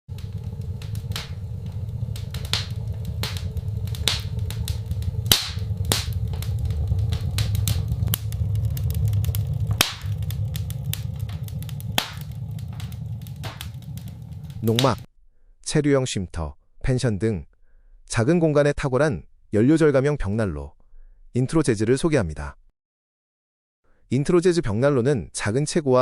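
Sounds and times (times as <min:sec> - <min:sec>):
fire crackling and popping: 0:00.1 - 0:15.1
wood fire rumble: 0:00.1 - 0:15.1.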